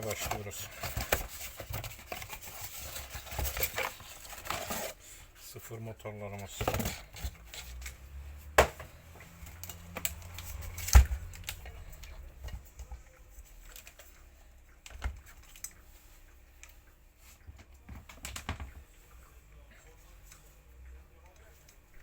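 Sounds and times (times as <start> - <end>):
plastic parts clicking and tapping: 0.0 - 4.9, 6.4 - 8.0, 8.6 - 14.2, 17.5 - 18.9.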